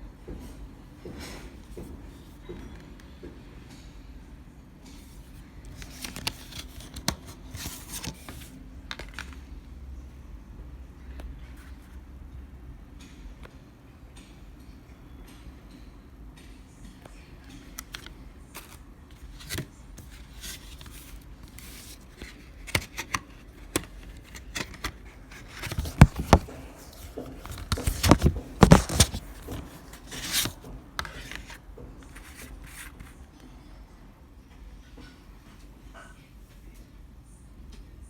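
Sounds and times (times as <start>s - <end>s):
hands handling disc packaging: 5.2s - 9.4s, 17.7s - 33.1s.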